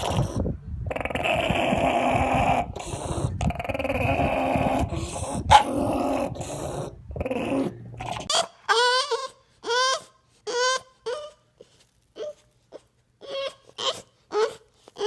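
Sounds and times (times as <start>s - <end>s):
dog growling: 0.0s - 8.3s.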